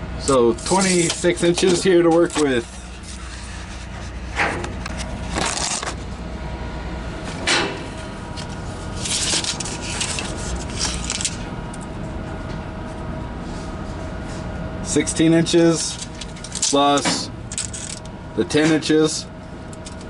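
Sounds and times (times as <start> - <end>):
industrial hum: 0.0 - 20.0
handling rubbing and scraping: 0.5 - 6.1, 8.3 - 11.5.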